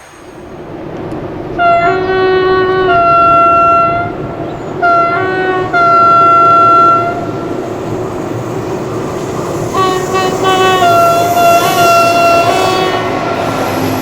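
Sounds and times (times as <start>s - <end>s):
train rumbling on rails: 0.0s - 14.0s
two-tone train horn: 1.6s - 4.2s, 4.8s - 7.4s, 9.7s - 13.4s.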